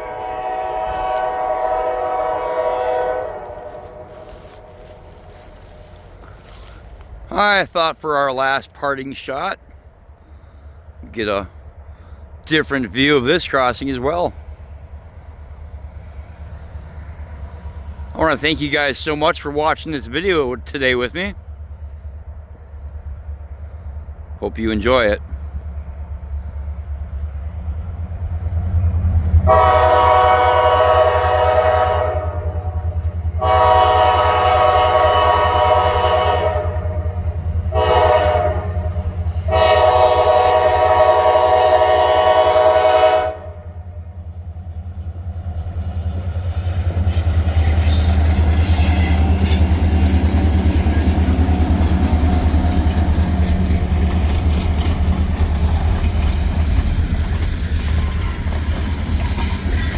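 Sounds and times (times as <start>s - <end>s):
locomotive horn: 0.0s - 7.4s, 29.4s - 44.1s
locomotive engine rumble: 0.0s - 31.9s, 32.5s - 59.9s
train cars clattering on rails: 44.6s - 59.9s.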